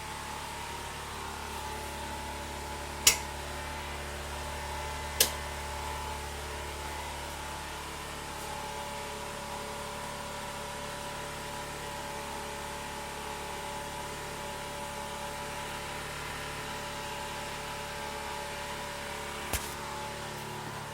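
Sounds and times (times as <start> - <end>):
sharp click: 19.5 - 19.8.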